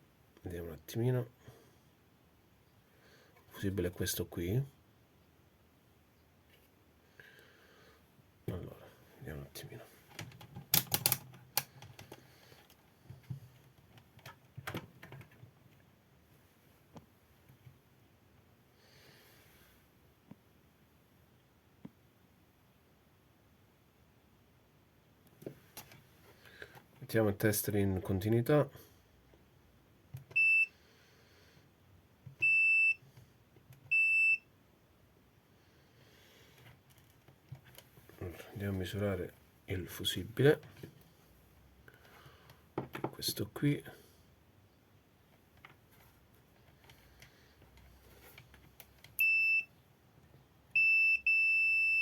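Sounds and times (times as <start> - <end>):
multimeter beeping: 30.3 - 30.7, 32.4 - 33.0, 33.9 - 34.5, 49.2 - 49.7, 50.8 - 52.0.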